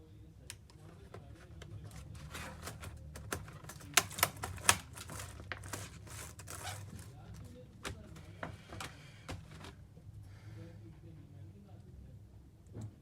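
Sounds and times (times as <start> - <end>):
plastic laptop parts clicking: 0.5 - 7.2.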